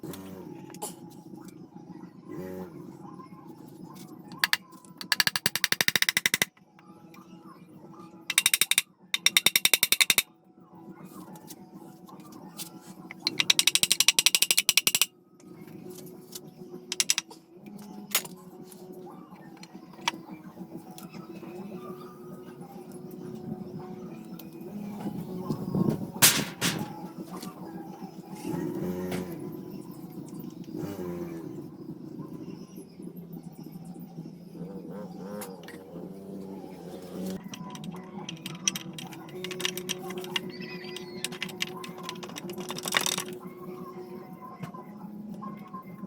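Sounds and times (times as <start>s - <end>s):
rapid mechanical clicking: 4.3s - 6.6s, 8.3s - 10.3s, 13.1s - 15.1s, 16.9s - 17.2s, 37.2s - 43.6s.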